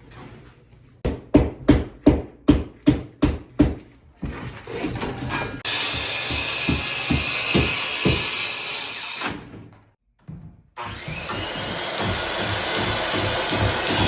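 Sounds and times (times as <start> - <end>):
hammer striking nail into wood: 5.8 - 8.5.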